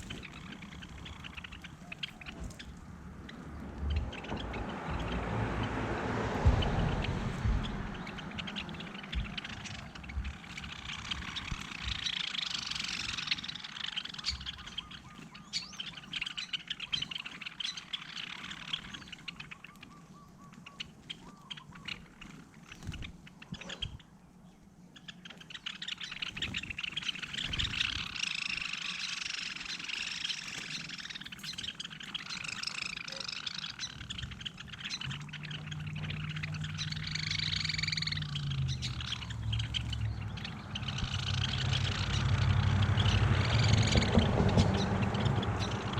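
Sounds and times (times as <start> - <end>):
low steady hum: 0.0 - 14.8
small birds chirping: 0.0 - 45.9.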